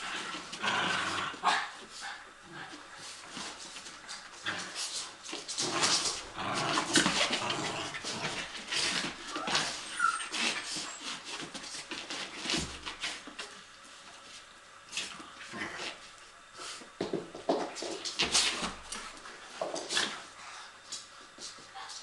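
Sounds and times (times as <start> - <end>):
dogs playing and vocalizing: 0.0 - 14.2, 14.9 - 16.9.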